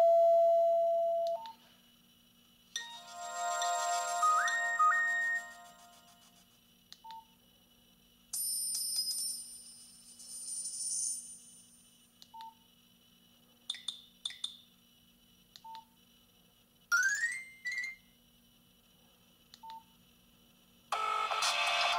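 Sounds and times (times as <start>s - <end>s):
hissy high-pitched electronic sounds: 2.8s - 6.5s.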